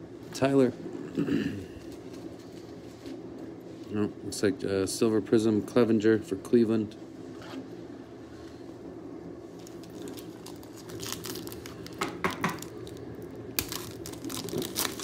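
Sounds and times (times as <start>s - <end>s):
wrapper crinkling and tearing: 9.6s - 15.0s.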